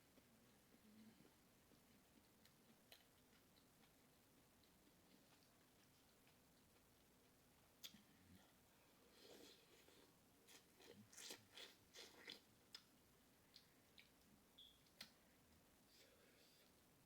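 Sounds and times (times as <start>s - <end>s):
chewing and lip-smacking: 0.1s - 8.1s, 9.7s - 15.2s.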